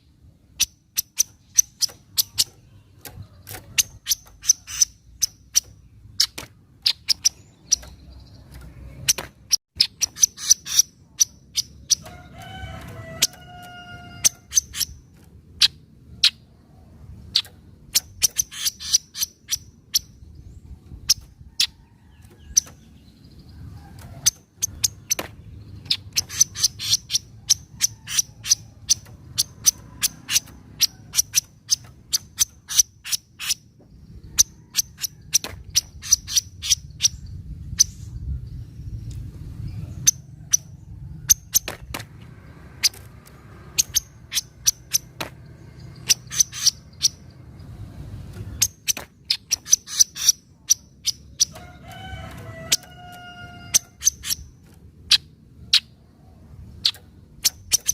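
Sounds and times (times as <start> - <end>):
bird chattering chips: 0.6 - 12.5, 17.4 - 20.1, 25.9 - 33.6, 48.6 - 51.6.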